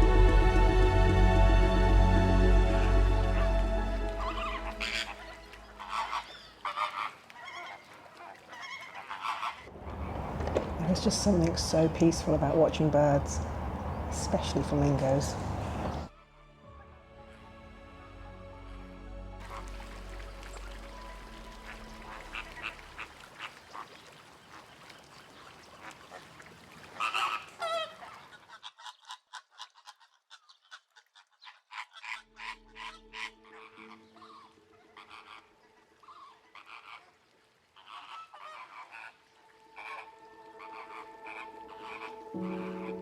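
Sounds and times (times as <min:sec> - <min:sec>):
flamingos honking: 0:00.0 - 0:16.4, 0:19.4 - 0:30.8, 0:31.4 - 0:43.0.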